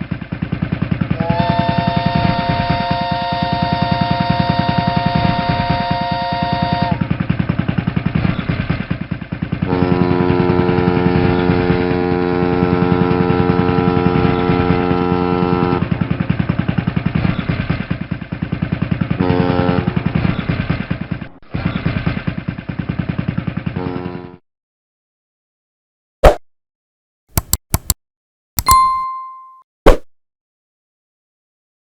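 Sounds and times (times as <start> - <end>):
boat engine chugging: 0.0 - 24.3
boat horn blasts: 1.2 - 7.0, 9.7 - 15.9, 19.2 - 20.0.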